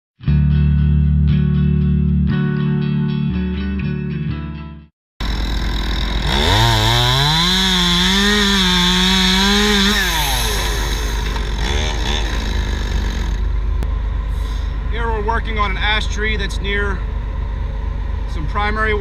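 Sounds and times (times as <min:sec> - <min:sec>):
chainsaw revving: 0:05.2 - 0:13.6.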